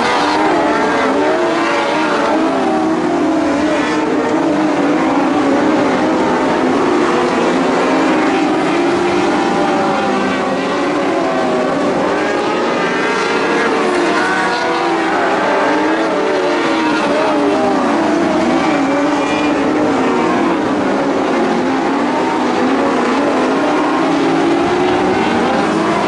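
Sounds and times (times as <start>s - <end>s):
race car engines: 0.0s - 26.0s.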